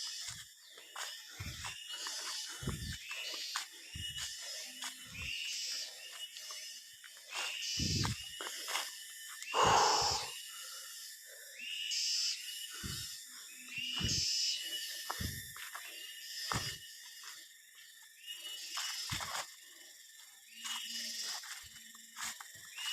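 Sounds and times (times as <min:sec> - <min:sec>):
short animal calls: 0:09.5 - 0:10.4.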